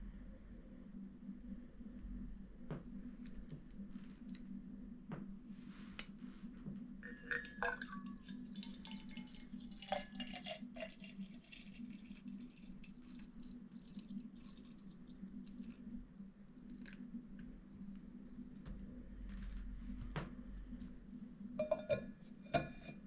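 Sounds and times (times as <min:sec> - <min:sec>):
low hum: 0:00.0 - 0:09.9, 0:11.1 - 0:23.0
glassy clinks: 0:07.0 - 0:08.1
liquid pouring: 0:07.0 - 0:15.9.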